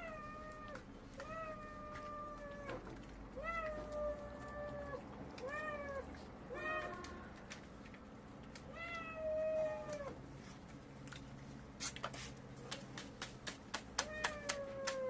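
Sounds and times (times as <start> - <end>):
cat meowing: 0.0 - 7.4, 8.7 - 10.2.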